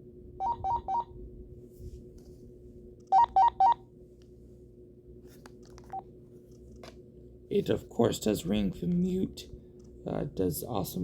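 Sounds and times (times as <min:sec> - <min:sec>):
cordless phone paging beeps: 0:00.4 - 0:01.1, 0:03.1 - 0:03.8.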